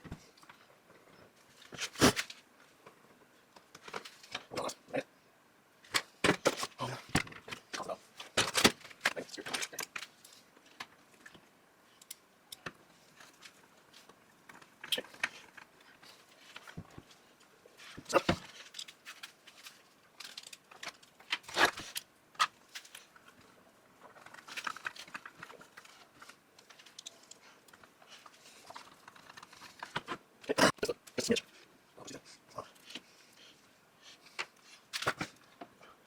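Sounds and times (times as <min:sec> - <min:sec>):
small clicks and scrapes: 0:05.8 - 0:30.3.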